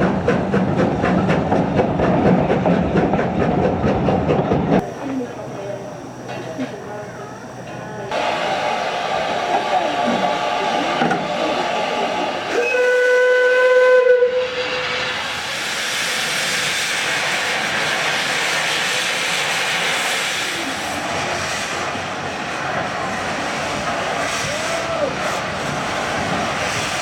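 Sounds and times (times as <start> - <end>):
steam hissing: 4.8 - 27.0
steam whistle blast: 8.2 - 15.9.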